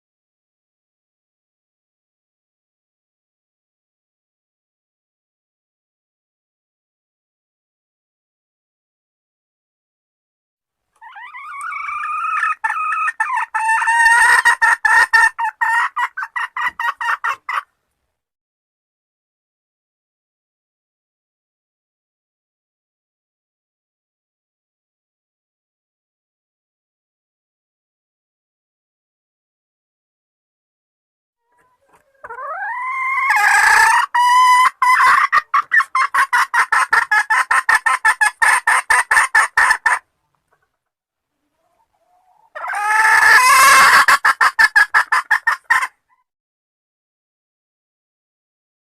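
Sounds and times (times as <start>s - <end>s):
hen calling and clucking: 11.0s - 17.7s, 31.4s - 40.8s, 41.4s - 46.2s.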